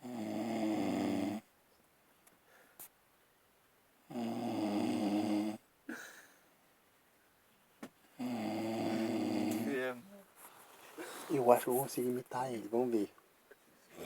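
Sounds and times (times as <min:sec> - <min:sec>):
man snoring: 0:00.0 - 0:01.5, 0:04.1 - 0:05.6, 0:08.2 - 0:09.9.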